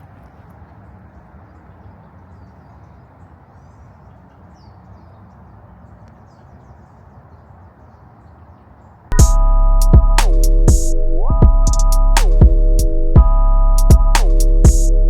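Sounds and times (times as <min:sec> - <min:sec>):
small birds chirping: 0:00.0 - 0:09.1
low outdoor background noise: 0:00.0 - 0:09.9.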